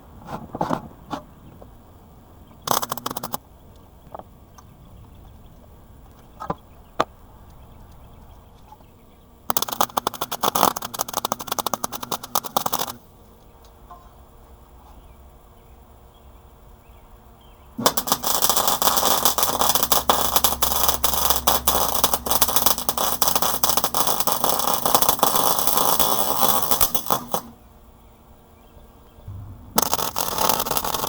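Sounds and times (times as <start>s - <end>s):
welding crackling: 2.7s - 3.4s, 9.5s - 13.0s, 17.8s - 27.6s, 29.3s - 31.0s.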